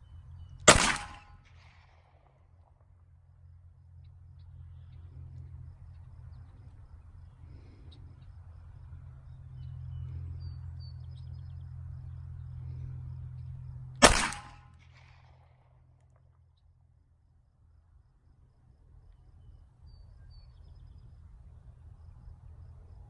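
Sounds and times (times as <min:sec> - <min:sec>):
pistol shot: 0:00.7 - 0:02.3, 0:14.0 - 0:15.5
faint bird chirps: 0:19.4 - 0:21.2.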